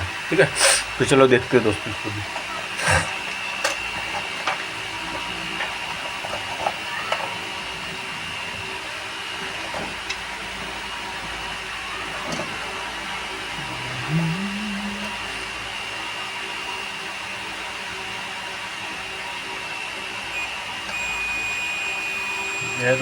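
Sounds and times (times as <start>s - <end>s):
steady high beep: 20.4s - 23.0s.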